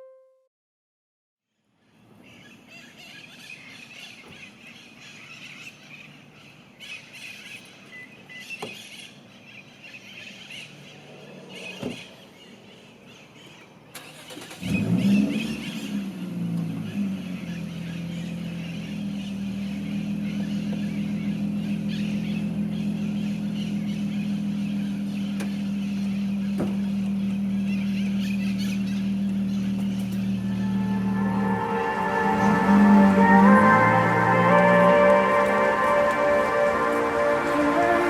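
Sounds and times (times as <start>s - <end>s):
outdoor ambience: 1.6s - 38.0s
car engine starting and idling: 14.0s - 38.0s.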